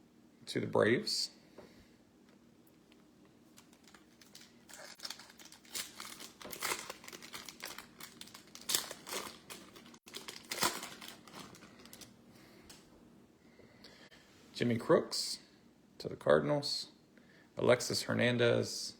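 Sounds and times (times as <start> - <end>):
wrapper crinkling and tearing: 3.5 - 12.1.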